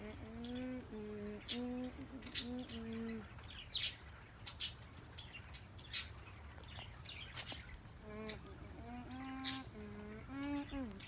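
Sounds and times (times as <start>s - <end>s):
person humming: 0.0s - 3.2s, 8.0s - 11.0s
birds chirping: 0.0s - 11.0s
faint low hum: 0.0s - 11.0s.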